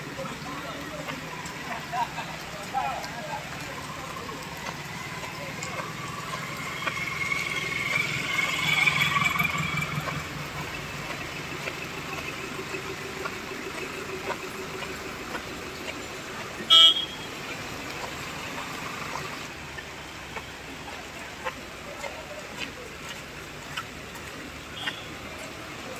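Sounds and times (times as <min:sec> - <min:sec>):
motor vehicle passing: 0:00.0 - 0:25.9
steady rain falling: 0:00.0 - 0:25.9
short horn beep: 0:16.7 - 0:17.3.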